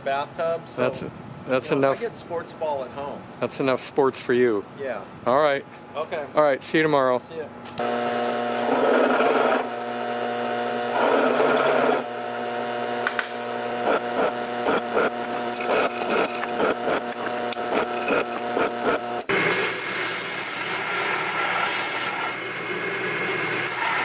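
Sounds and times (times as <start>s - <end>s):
grinding metal: 7.8s - 19.3s
shop tool motor humming: 7.8s - 24.0s.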